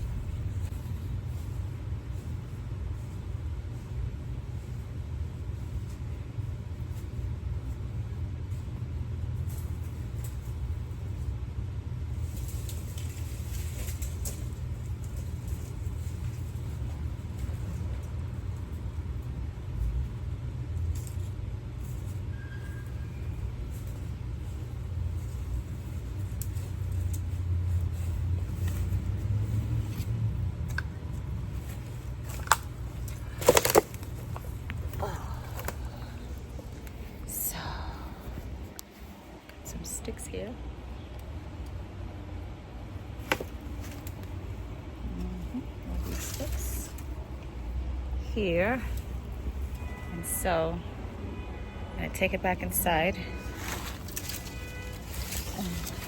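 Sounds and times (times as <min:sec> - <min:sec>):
steady low rumble: 0:00.0 - 0:22.3, 0:23.1 - 0:56.0
dry sticks crackling: 0:12.0 - 0:39.6, 0:43.0 - 0:47.6, 0:52.1 - 0:56.0
dry sticks snapping: 0:25.4 - 0:29.2, 0:29.9 - 0:37.0, 0:53.6 - 0:56.0.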